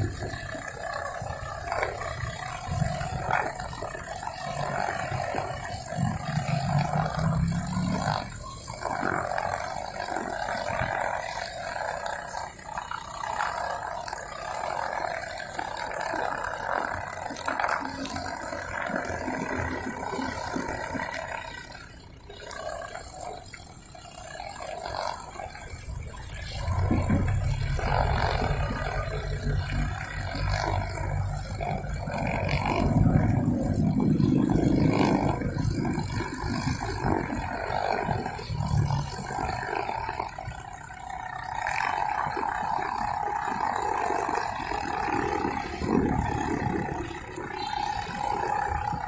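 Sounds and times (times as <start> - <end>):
brush cutter running: 0.0 - 49.0.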